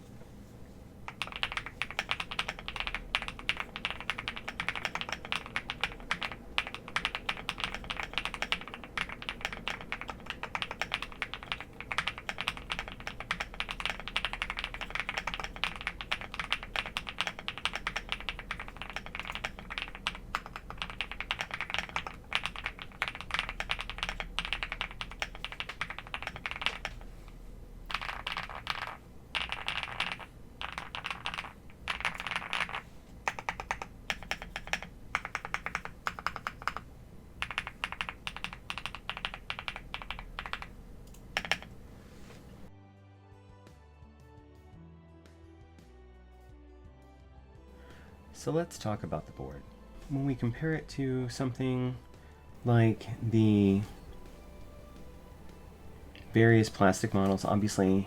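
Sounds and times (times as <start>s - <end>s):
mechanical keyboard typing: 1.1s - 27.3s, 27.9s - 41.7s.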